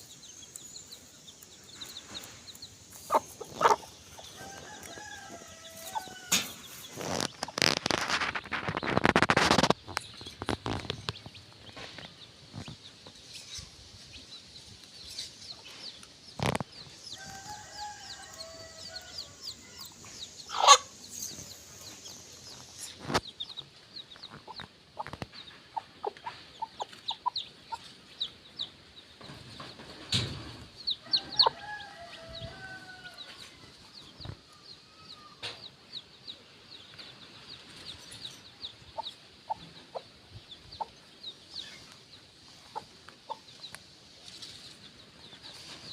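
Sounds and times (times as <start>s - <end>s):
chicks peeping: 0.0s - 45.9s
hen clucking softly: 3.0s - 5.2s, 20.5s - 21.0s, 24.2s - 28.0s.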